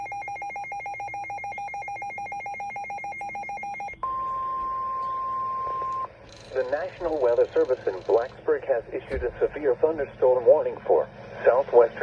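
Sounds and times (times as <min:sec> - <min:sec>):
steady single-pitched alarm tone: 0:00.0 - 0:08.4
rapid electronic beeping: 0:05.9 - 0:08.8.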